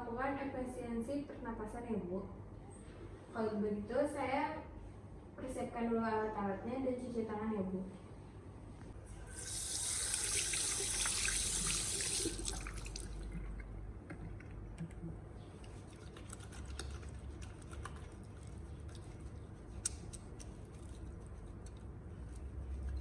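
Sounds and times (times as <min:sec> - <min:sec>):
tap water running into sink: 0:09.3 - 0:13.3.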